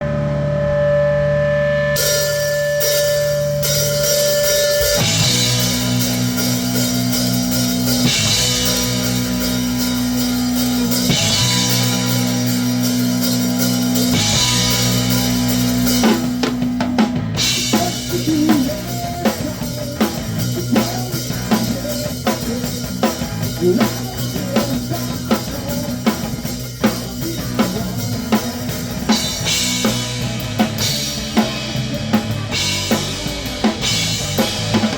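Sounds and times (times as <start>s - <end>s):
distorted guitar and bass: 0.0s - 34.9s
cymbal wash: 0.1s - 16.8s.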